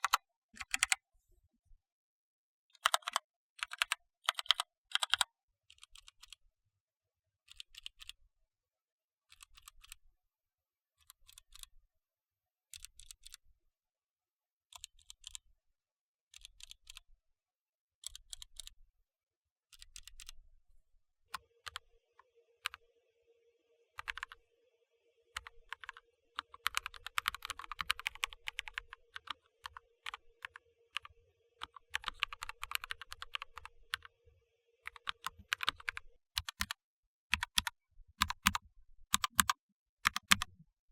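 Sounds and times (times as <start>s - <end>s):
mechanical keyboard typing: 0.0s - 1.0s, 2.8s - 5.3s, 24.0s - 24.4s, 25.3s - 34.1s, 34.8s - 40.6s.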